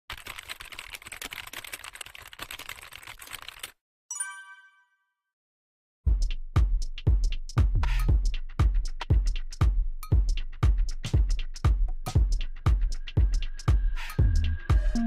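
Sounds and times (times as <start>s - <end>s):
electronic music with heavy beat: 6.1s - 15.0s.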